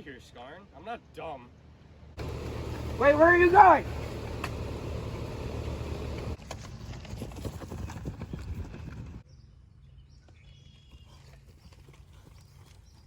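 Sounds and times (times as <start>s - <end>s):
low steady hum: 2.2s - 6.4s.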